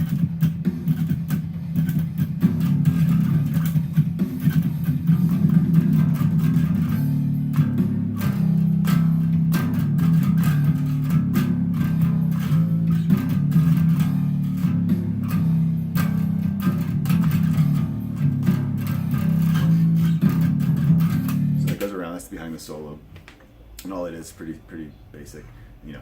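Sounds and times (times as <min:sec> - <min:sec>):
electric bass guitar riff: 0:00.0 - 0:22.0.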